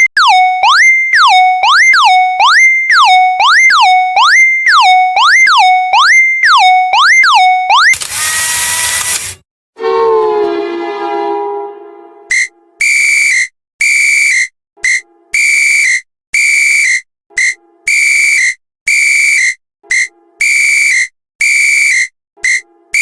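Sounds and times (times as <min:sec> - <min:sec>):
falling tone: 0:09.8 - 0:12.6
high whistle blasts: 0:12.3 - 0:23.0.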